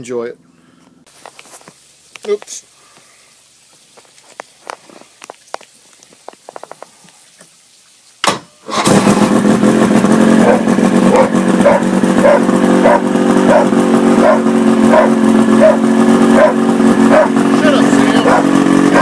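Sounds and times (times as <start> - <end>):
engine running with regular pulse: 8.6 - 19.0.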